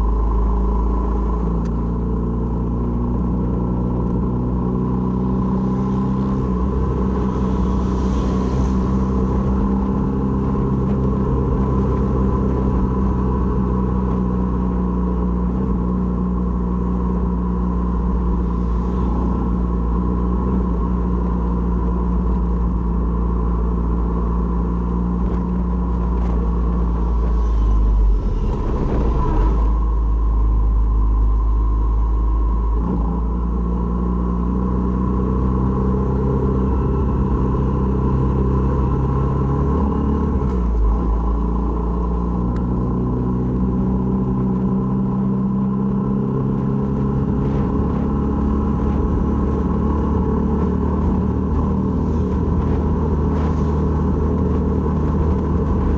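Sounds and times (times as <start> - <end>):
motorcycle engine running: 0.0 - 55.9
brief rush of noise: 6.9 - 10.1, 26.4 - 30.6.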